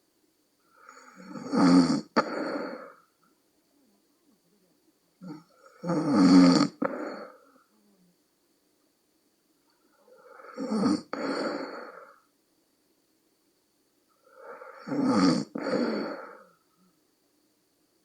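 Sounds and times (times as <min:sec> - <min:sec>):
woman snoring: 0:00.7 - 0:03.1, 0:05.2 - 0:07.7, 0:10.0 - 0:12.3, 0:14.2 - 0:16.7.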